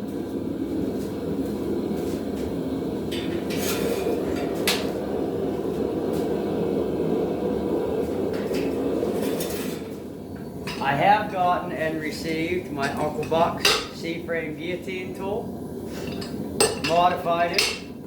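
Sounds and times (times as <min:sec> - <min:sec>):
metal tools clinking: 0:12.8 - 0:14.0.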